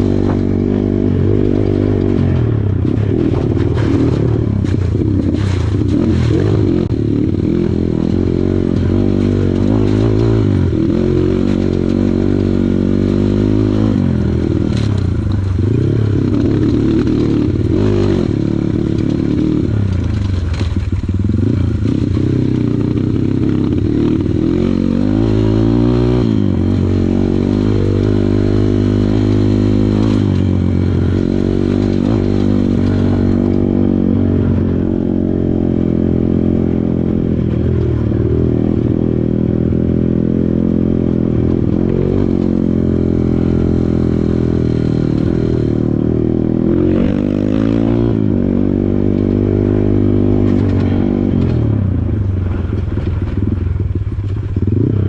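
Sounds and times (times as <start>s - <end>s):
motorcycle engine revving: 0.0s - 55.0s
sharp knocks and clatter: 50.4s - 51.7s.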